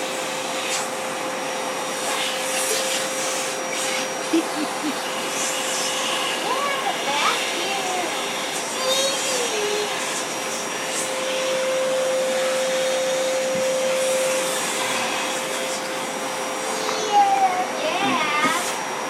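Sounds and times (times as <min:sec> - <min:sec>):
vacuum cleaner running: 0:00.0 - 0:19.0.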